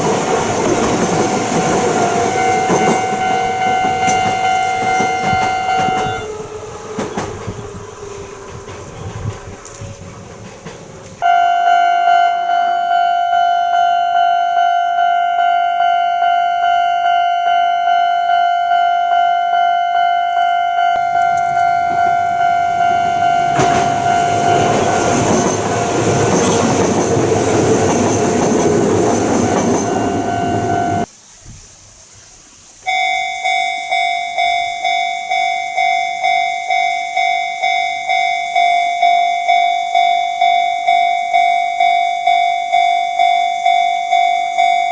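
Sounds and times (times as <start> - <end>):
level crossing warning bell: 0.0 - 9.0, 11.2 - 31.1, 32.9 - 44.9
train rumble and rail noise: 0.0 - 11.3, 20.2 - 31.1.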